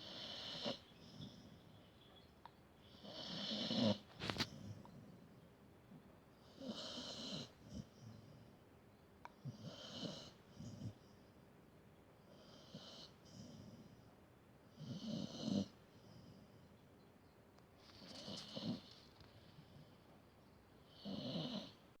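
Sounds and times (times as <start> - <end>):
dog snoring: 0.0 - 1.7, 2.8 - 5.0, 6.4 - 8.5, 9.4 - 11.1, 12.3 - 14.1, 14.7 - 16.5, 17.8 - 20.0, 20.8 - 21.9.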